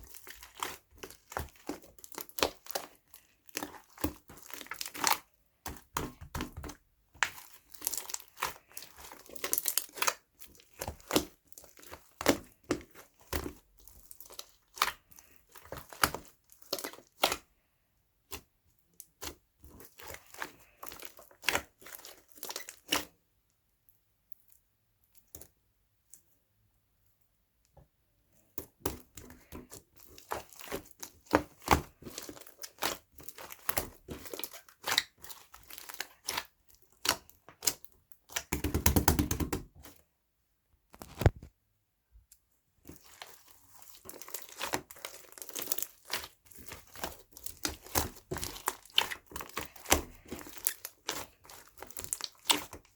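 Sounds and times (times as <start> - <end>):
crinkling and rustling: 28.6 - 38.6, 40.8 - 41.6, 42.3 - 52.9.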